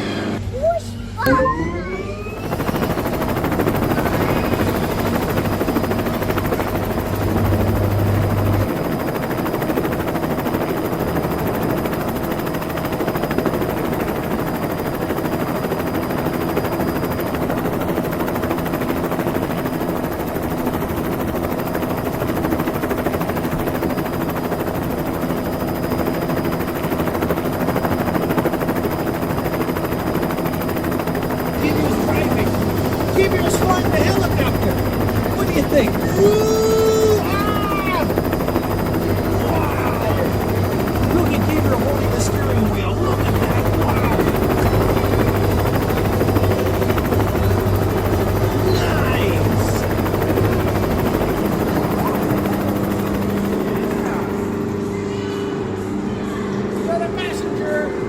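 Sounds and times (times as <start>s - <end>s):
low hum: 0.0s - 14.0s, 29.5s - 56.9s
helicopter sound effect from speaker: 0.0s - 58.0s.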